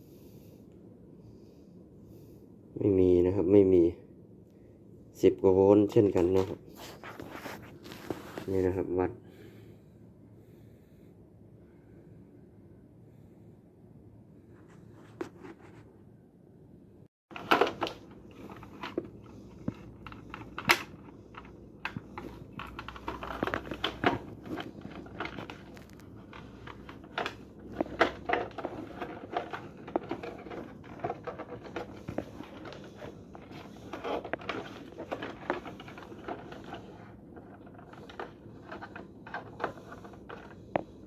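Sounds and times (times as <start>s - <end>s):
rustling: 6.4s - 8.6s, 17.3s - 41.0s.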